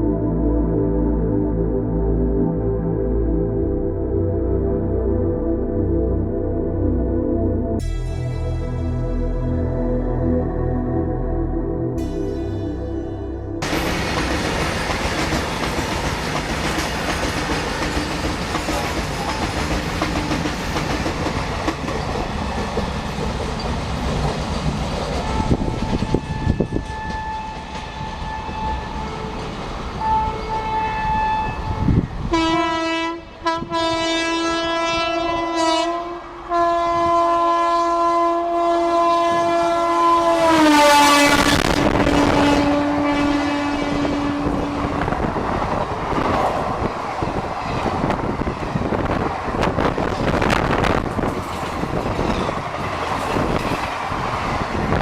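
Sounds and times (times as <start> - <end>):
train rumble and wheel clatter: 13.6 - 55.0
locomotive horn blowing: 25.2 - 45.0.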